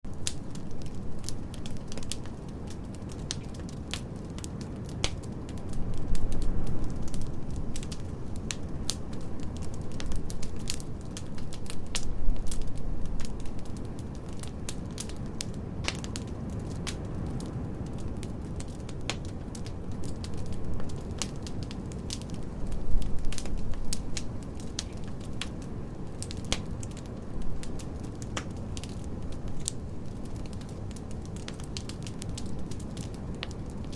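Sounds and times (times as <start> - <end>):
fire crackling and popping: 0.0 - 33.9
low fire rumble: 0.0 - 33.9.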